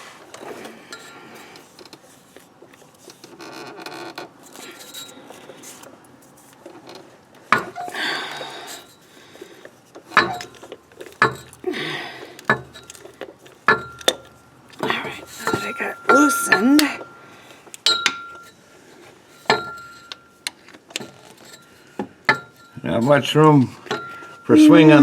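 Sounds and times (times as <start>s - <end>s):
sharp metal knocks: 10.1s - 10.6s, 11.2s - 11.6s, 13.7s - 17.2s, 17.8s - 18.4s, 19.5s - 20.2s
ratchet metallic clinks: 13.7s - 18.6s.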